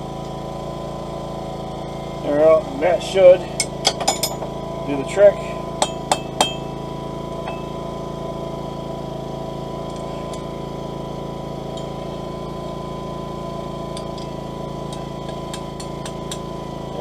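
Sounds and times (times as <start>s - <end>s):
forge drone: 0.0s - 17.0s.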